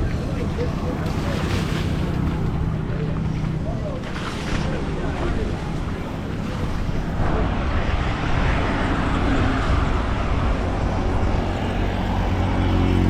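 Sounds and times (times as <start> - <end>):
tyre and road noise: 0.0 - 13.0
vehicle engines: 0.0 - 13.0.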